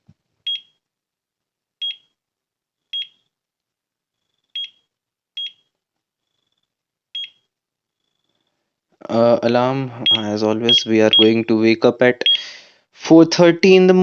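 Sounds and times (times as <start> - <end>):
alarm clock button beeps: 0.5 - 0.7, 1.8 - 2.1, 3.0 - 3.2, 4.5 - 4.8, 5.4 - 5.6, 7.2 - 7.4, 10.0 - 11.4, 12.2 - 12.5.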